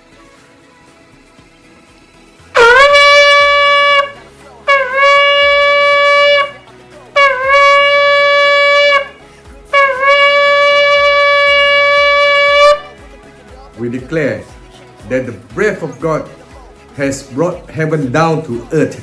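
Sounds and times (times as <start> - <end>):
shofar blasts: 2.6 - 13.0.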